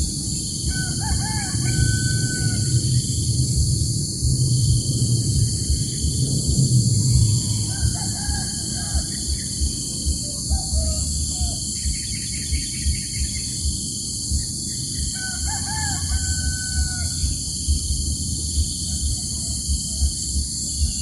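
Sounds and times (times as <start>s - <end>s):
steady high hiss: 0.0s - 21.0s
rooster crowing: 0.5s - 3.0s, 7.1s - 11.7s, 15.1s - 17.6s, 18.8s - 20.2s.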